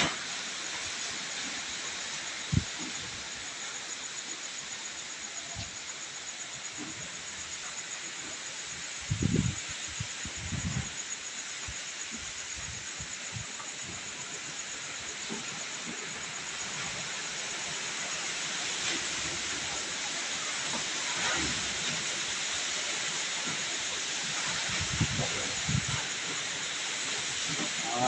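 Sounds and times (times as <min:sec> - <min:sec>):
strong storm wind: 0:08.9 - 0:14.0, 0:24.2 - 0:27.8
wind gusts thumping microphone: 0:09.0 - 0:11.0, 0:24.4 - 0:26.3.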